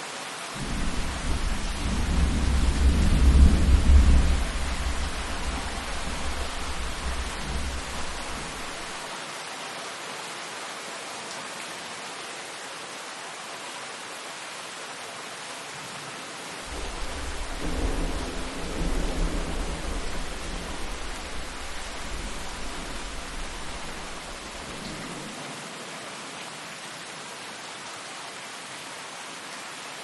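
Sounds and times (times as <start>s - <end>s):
rainfall hissing: 0.0s - 13.2s, 14.9s - 28.7s
thunder rumble: 0.6s - 9.0s, 16.7s - 25.1s.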